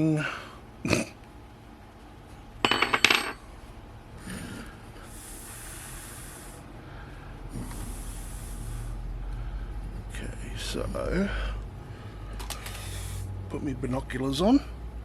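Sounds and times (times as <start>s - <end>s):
metal part clattering on bench: 2.6s - 3.4s
soft high hisses: 12.7s - 13.3s.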